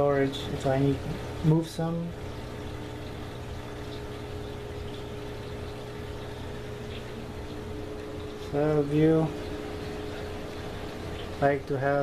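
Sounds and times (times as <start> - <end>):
aquarium equipment humming: 0.0 - 12.0.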